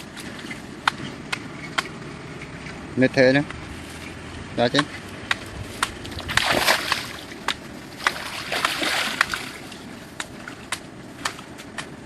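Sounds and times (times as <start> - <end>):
water splashing and sloshing: 3.6 - 11.9.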